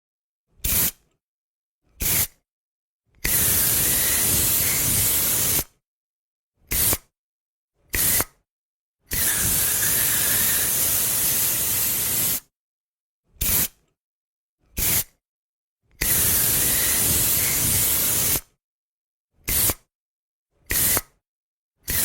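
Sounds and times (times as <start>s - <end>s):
aerosol spray can hissing: 0.7s - 1.0s, 2.0s - 2.3s, 3.2s - 5.7s, 6.7s - 7.0s, 8.0s - 8.2s, 9.1s - 12.5s, 13.4s - 13.8s, 14.8s - 15.1s, 16.0s - 18.5s, 19.5s - 19.8s, 20.7s - 21.1s.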